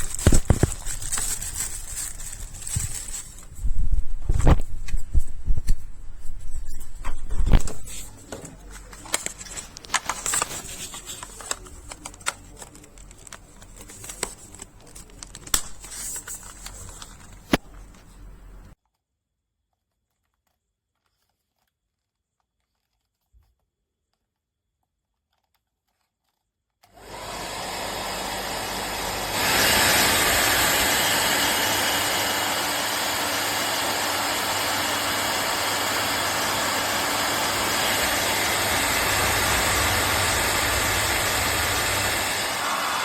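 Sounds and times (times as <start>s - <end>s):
hair dryer running: 26.9s - 43.0s.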